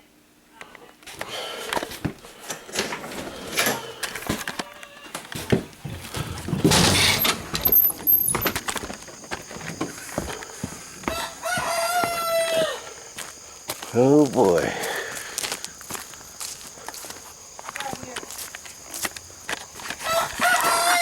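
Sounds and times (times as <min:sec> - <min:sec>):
knocks clicks and clatter: 0:05.4 - 0:09.9
rooster crowing: 0:11.0 - 0:13.2, 0:20.0 - 0:21.0.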